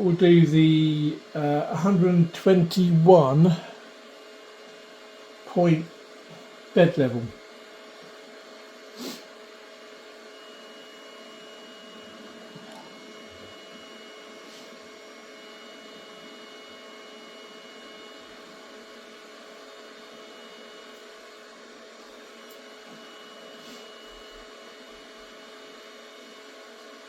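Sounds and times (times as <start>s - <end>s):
printer electrical hum: 0.0s - 27.0s
whining tones: 10.2s - 18.6s.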